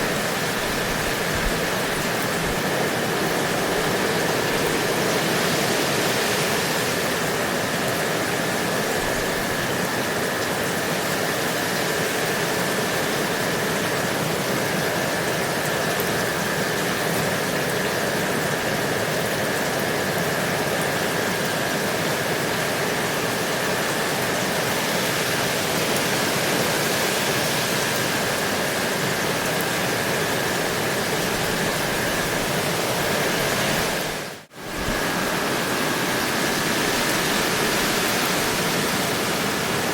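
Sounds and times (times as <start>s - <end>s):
steady rain: 0.0s - 39.9s.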